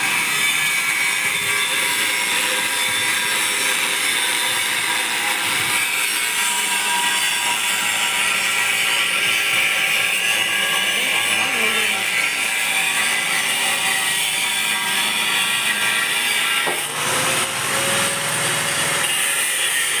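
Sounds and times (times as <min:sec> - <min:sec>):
milling machine cutting metal: 0:00.0 - 0:20.0.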